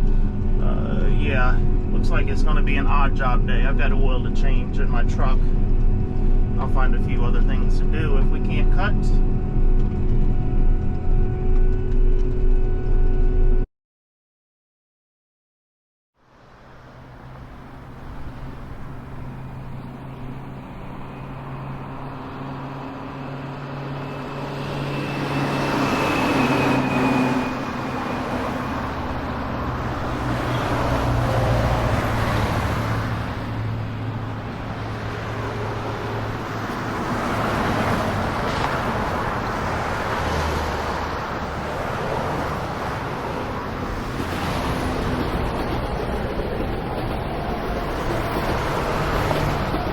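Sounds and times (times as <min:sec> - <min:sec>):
road and wind noise: 0:00.0 - 0:13.6, 0:16.2 - 0:49.9
vehicle engine hum: 0:00.0 - 0:13.6, 0:16.2 - 0:49.9.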